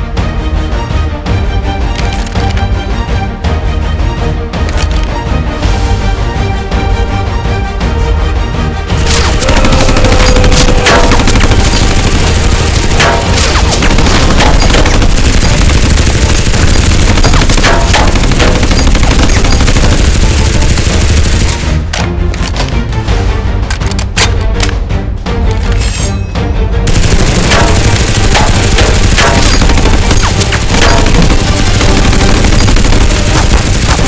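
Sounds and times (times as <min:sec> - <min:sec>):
background music: 0:00.0 - 0:34.0
rapid overlapping gunshots: 0:09.0 - 0:21.9, 0:26.9 - 0:34.0.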